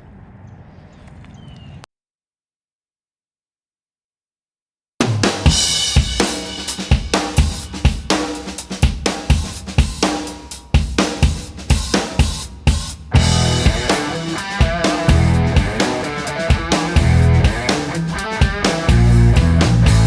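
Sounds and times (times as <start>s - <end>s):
rock music with drum kit: 5.0s - 20.0s.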